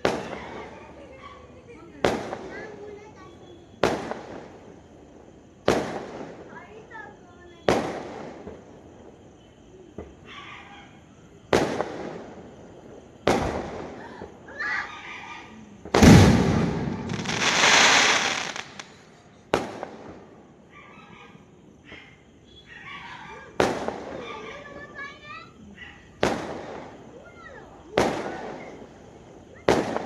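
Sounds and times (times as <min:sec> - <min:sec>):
fireworks bangs: 0:05.6 - 0:06.6, 0:13.2 - 0:14.0, 0:15.8 - 0:20.3, 0:26.2 - 0:27.1, 0:29.6 - 0:30.0
firework hiss: 0:15.9 - 0:20.2.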